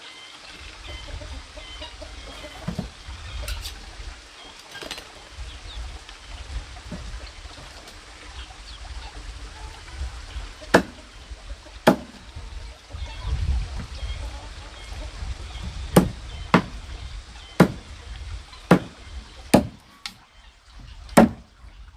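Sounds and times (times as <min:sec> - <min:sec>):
steady low rumble: 0:05.3 - 0:19.5
sharp knocks: 0:10.7 - 0:11.1, 0:11.8 - 0:12.2, 0:15.9 - 0:16.8, 0:17.6 - 0:17.9, 0:18.7 - 0:19.8, 0:21.2 - 0:21.5.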